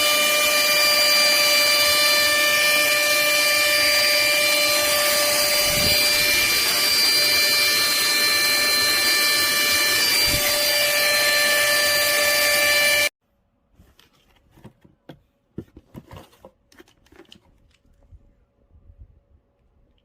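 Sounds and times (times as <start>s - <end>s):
handheld vacuum cleaner running: 0.0s - 13.1s.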